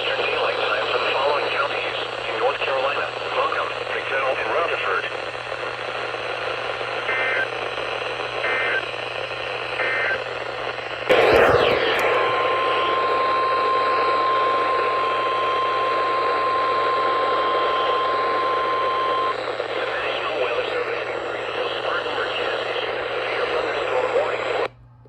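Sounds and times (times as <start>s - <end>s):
radio crackle: 0.0s - 24.7s
radio hiss: 0.0s - 24.7s
warbling data bursts: 11.1s - 15.0s.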